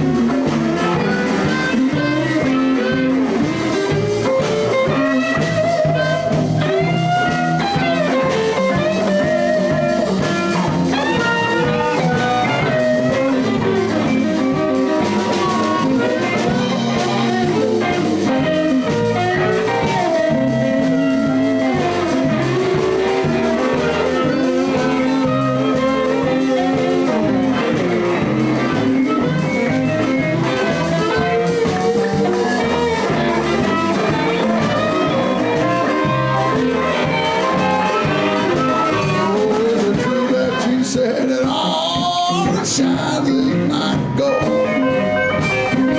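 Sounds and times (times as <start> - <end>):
blues band playing: 0.0 - 45.9
electric guitar lead: 0.0 - 45.9.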